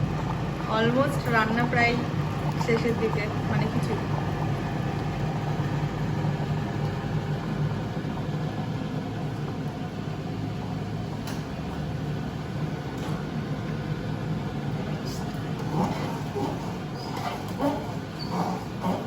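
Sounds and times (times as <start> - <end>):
low mechanical hum: 0.0 - 19.0.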